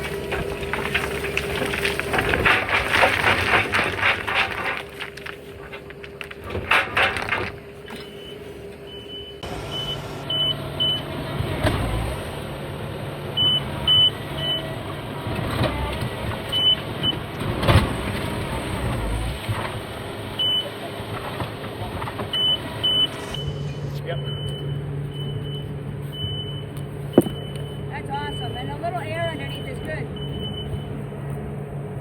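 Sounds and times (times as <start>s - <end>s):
vehicle engine running: 0.0s - 32.0s
reversing alarm beeping: 7.9s - 11.1s, 13.4s - 14.7s, 22.4s - 31.0s
heavy thumps: 27.1s - 27.7s.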